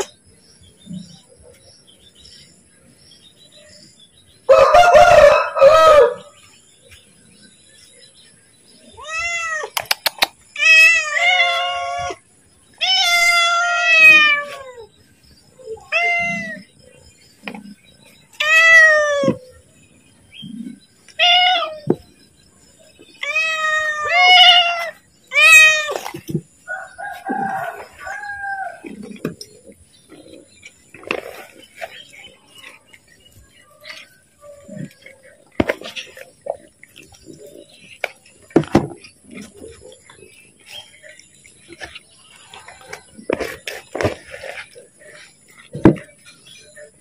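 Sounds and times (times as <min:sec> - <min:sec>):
sharp clicks: 0:09.7 - 0:10.4.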